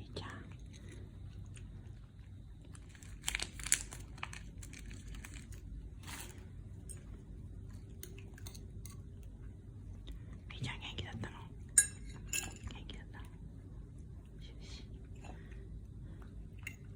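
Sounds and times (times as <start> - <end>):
plastic pack crinkling: 2.8 - 6.4.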